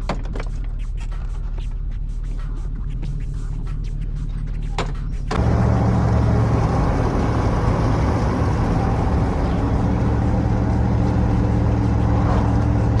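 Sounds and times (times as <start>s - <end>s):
car engine hum: 5.3s - 13.0s
road noise: 5.4s - 13.0s.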